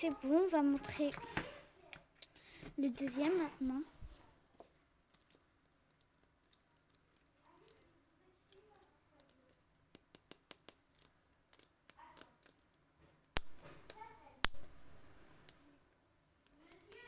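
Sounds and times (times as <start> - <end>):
faint handling clicks and taps: 0.0 - 12.8.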